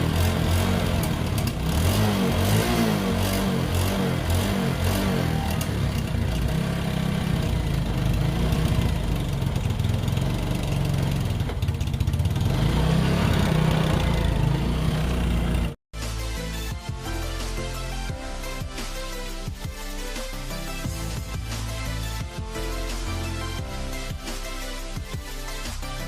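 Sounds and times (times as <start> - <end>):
motorcycle engine idling: 0.0 - 15.8
music: 2.3 - 8.3, 16.0 - 26.0.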